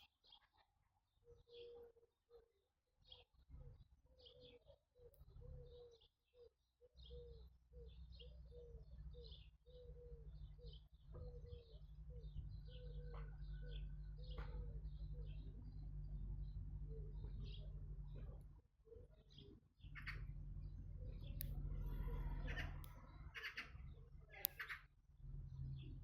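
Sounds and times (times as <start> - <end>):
low steady rumble: 7.8 - 26.0
low repeating bird call: 18.9 - 24.9.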